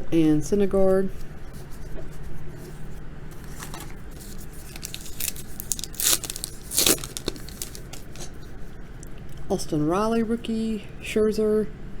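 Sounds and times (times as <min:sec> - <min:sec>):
packaging ripping: 0:03.4 - 0:08.4
trading cards rustling: 0:03.4 - 0:08.4.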